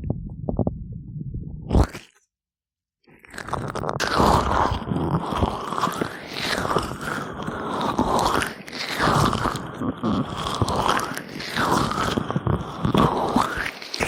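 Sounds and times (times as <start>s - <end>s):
wet crackly rubbing on microphone: 0.0s - 2.2s.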